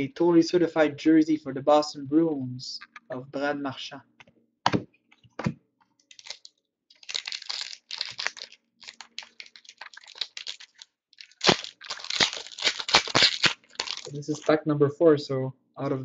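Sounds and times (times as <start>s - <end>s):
foil wrapper tearing and crinkling: 6.1s - 14.5s.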